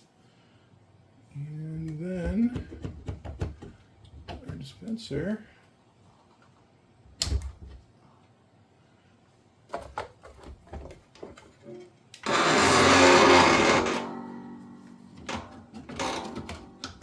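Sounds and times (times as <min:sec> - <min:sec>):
rattling scrape with ringing tone: 0:12.2 - 0:14.8.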